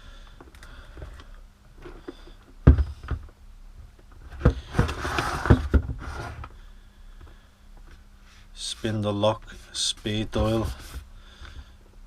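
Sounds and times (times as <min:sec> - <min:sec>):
cardboard box scraping and rustling: 0:04.6 - 0:06.5.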